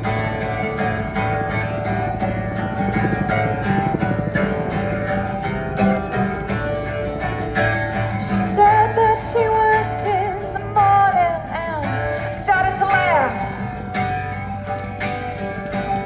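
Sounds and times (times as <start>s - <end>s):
acoustic guitar strummed chords: 0.0s - 16.0s
guitar lead melody with bends: 0.0s - 16.0s.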